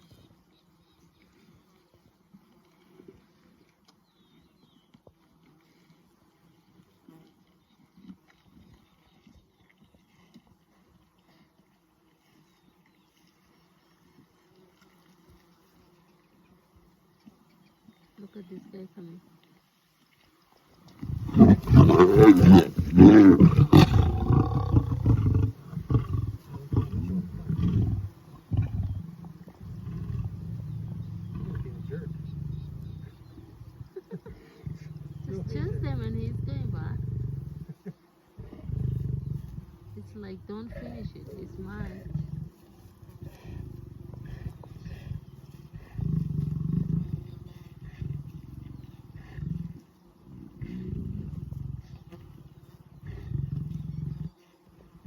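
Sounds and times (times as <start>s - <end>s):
lion growling: 21.0s - 37.8s, 38.4s - 54.4s
lion snarling and roaring: 21.0s - 37.8s, 38.4s - 54.4s.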